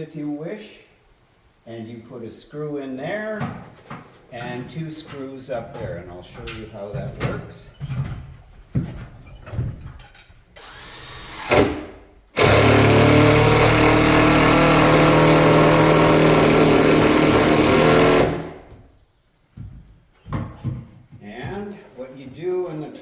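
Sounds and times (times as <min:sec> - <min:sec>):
power drill driving screw into wood: 0:10.6 - 0:18.7.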